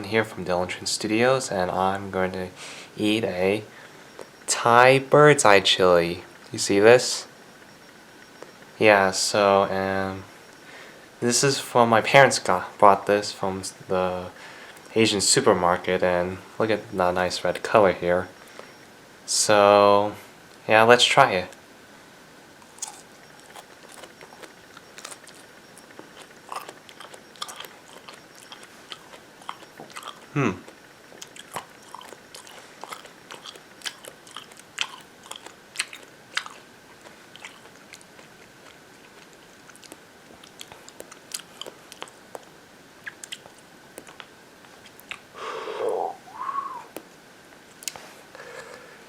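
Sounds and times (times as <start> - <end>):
mouth noises: 22.6 - 34.7, 39.2 - 47.2
crunchy chewing: 22.6 - 45.3
brief falling vocal sound: 45.6 - 47.0.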